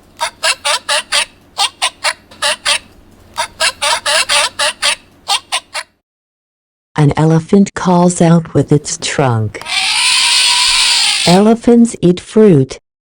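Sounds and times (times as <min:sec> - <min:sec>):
sea lions barking: 0:00.2 - 0:06.0.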